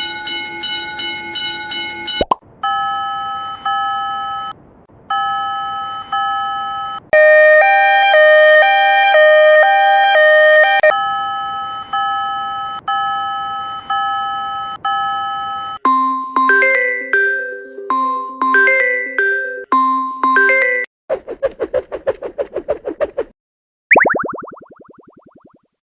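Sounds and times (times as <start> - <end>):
electronic crossing bell dinging: 0.0 - 4.4
alternating two-pitch crossing dings: 15.9 - 20.9.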